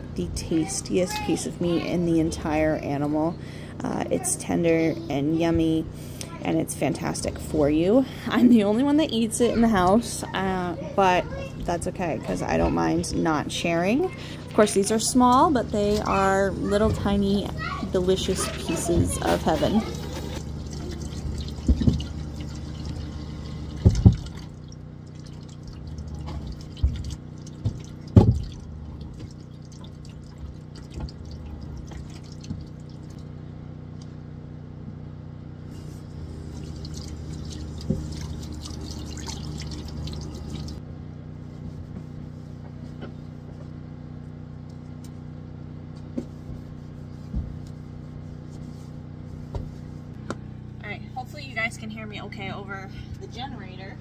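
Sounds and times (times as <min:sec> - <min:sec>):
generator humming: 0:00.0 - 0:54.0
water pouring and dripping: 0:19.9 - 0:33.2, 0:36.3 - 0:40.8.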